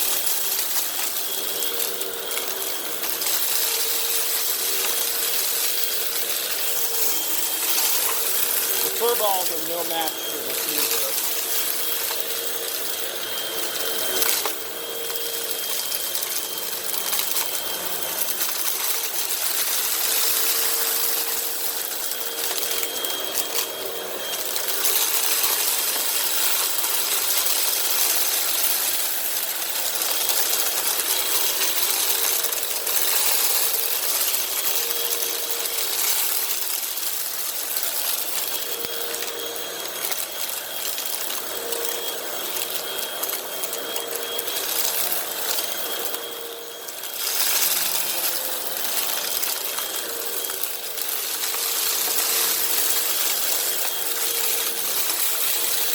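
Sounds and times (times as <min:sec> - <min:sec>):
vacuum motor whining: 0:00.0 - 0:55.9
dirt rattling through vacuum: 0:00.1 - 0:21.7.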